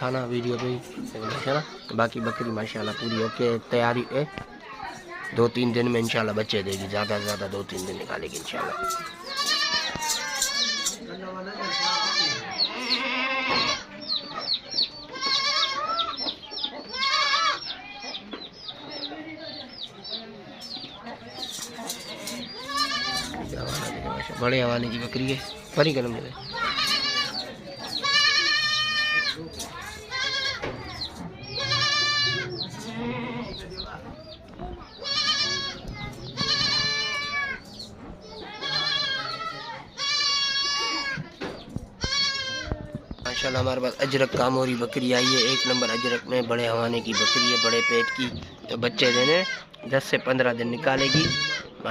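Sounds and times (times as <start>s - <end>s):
small birds chirping: 0.0s - 51.9s
goats bleating: 0.8s - 3.6s, 6.7s - 13.9s, 15.0s - 16.2s, 16.8s - 17.7s, 21.9s - 25.7s, 26.3s - 30.8s, 31.5s - 33.6s, 35.0s - 37.7s, 38.4s - 41.3s, 42.0s - 46.3s, 47.0s - 49.8s, 50.8s - 51.8s.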